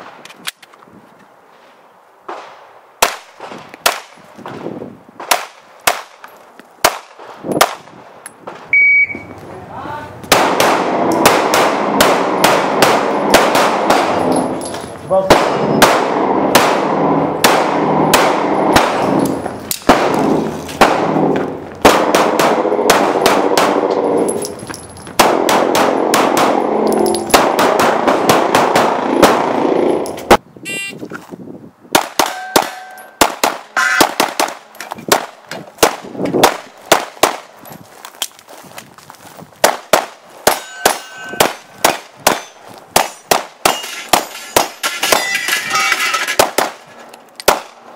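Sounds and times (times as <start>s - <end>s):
rapid pistol fire: 10.3s - 14.3s, 15.3s - 19.2s, 19.8s - 23.9s, 25.2s - 29.8s
steel targets clanging: 40.5s - 41.7s, 42.4s - 46.4s.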